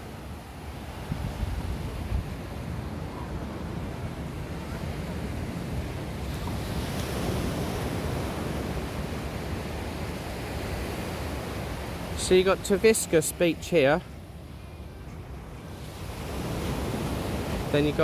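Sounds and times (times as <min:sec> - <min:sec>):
sea surf washing: 0:00.0 - 0:18.0
wind buffeting microphone: 0:00.9 - 0:09.3.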